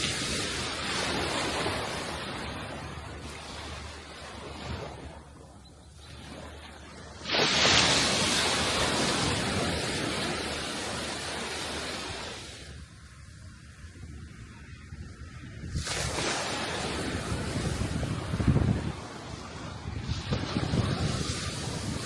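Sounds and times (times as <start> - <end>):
sea waves washing on shore: 0.0 - 22.0
wave breaking: 6.2 - 12.9, 15.5 - 22.0.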